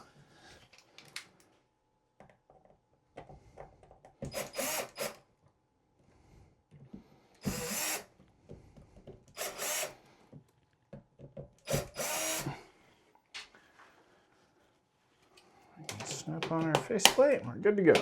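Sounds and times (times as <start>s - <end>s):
cordless drill driving screws: 4.2s - 5.2s, 7.4s - 8.2s, 9.3s - 10.1s, 11.6s - 12.6s.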